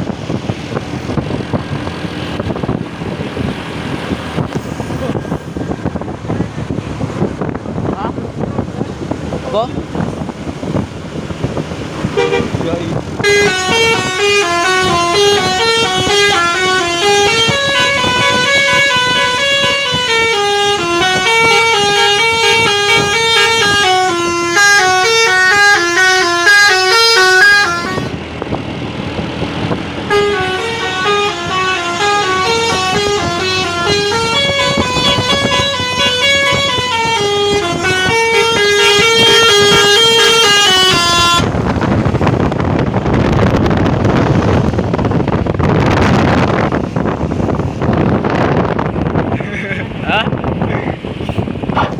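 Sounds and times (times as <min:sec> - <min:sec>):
wind and road noise: 0:00.0 - 0:51.9
musical bus air horn: 0:12.1 - 0:12.6, 0:13.2 - 0:28.2, 0:30.0 - 0:41.6.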